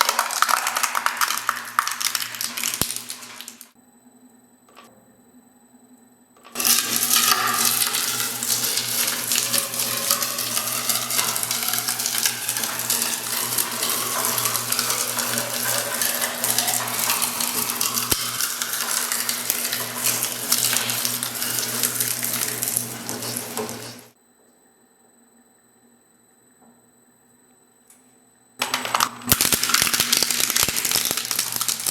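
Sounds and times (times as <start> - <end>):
industrial shredder crunching: 6.6 - 24.1, 28.6 - 31.9.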